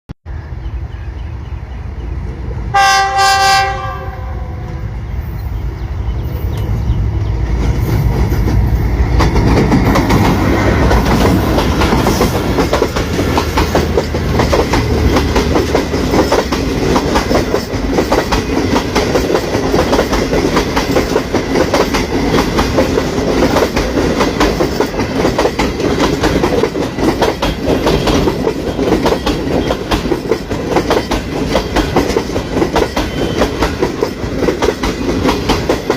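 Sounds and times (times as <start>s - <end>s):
locomotive air horn blast: 2.7s - 4.9s
train wheels clattering: 6.4s - 35.9s.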